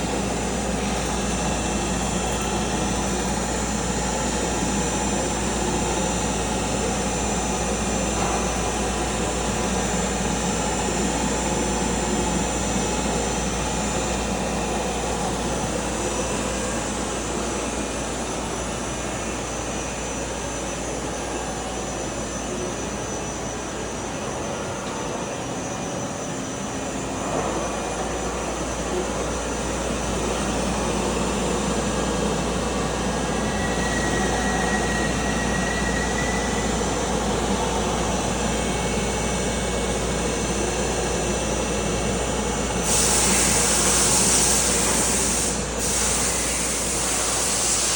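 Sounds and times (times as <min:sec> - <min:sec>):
milling machine whine: 0:00.0 - 0:47.9.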